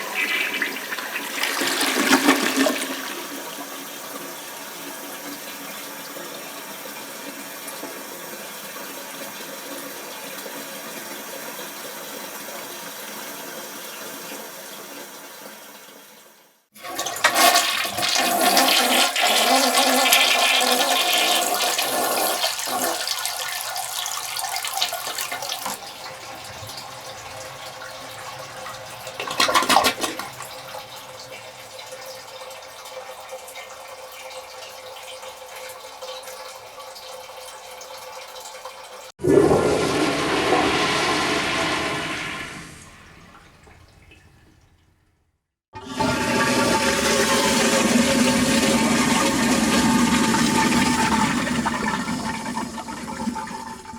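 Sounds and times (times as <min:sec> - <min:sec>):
water gurgling: 0:00.0 - 0:04.4, 0:16.8 - 0:32.6, 0:39.2 - 0:44.8, 0:45.8 - 0:53.9
water running: 0:00.0 - 0:44.9, 0:45.8 - 0:53.9
toilet flushing: 0:00.0 - 0:45.0, 0:45.8 - 0:53.9.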